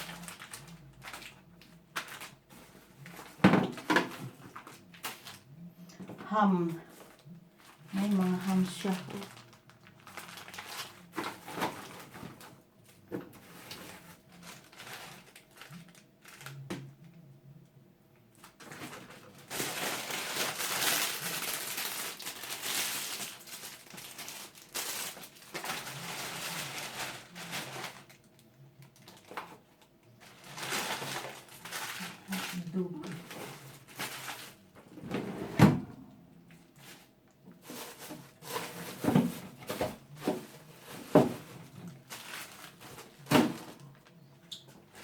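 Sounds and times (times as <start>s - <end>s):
plastic wrapping crinkling: 0.0s - 5.6s, 6.4s - 16.8s, 18.3s - 34.9s, 36.5s - 45.0s
items set down on shelves: 2.6s - 5.3s, 36.8s - 43.8s.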